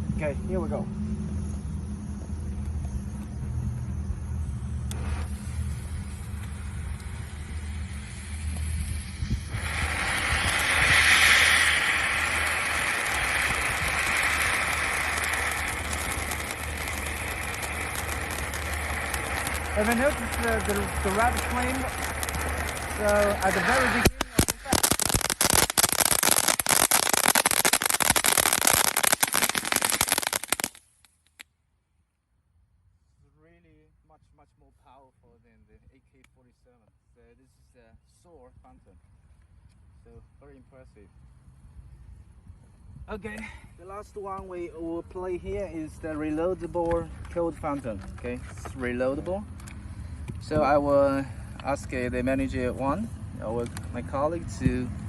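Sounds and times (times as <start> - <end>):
highway traffic: 0.0 - 30.7, 49.3 - 55.0
wind rumble: 0.0 - 30.7
firework fountain hissing: 3.9 - 31.4, 43.2 - 55.0.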